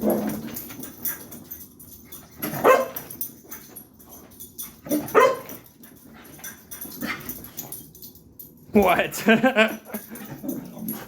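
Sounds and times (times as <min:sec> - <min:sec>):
puppy barking: 0:02.6 - 0:03.0, 0:05.0 - 0:05.5.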